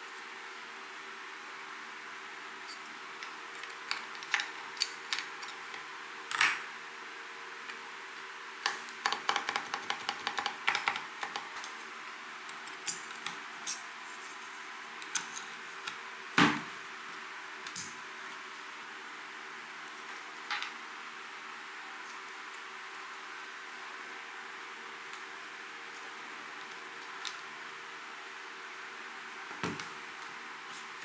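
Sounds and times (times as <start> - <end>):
mechanical keyboard typing: 8.7 - 11.6.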